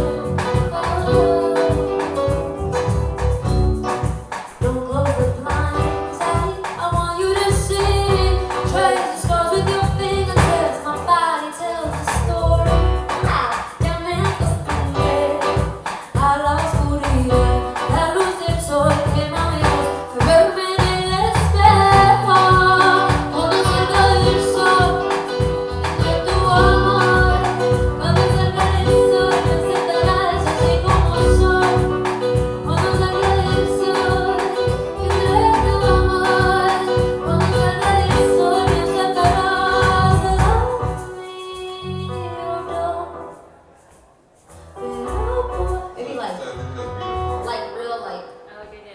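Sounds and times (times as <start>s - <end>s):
woman singing: 0.0s - 2.5s, 4.6s - 43.4s, 44.8s - 46.4s
drums steady beat: 0.0s - 10.8s, 12.7s - 41.0s.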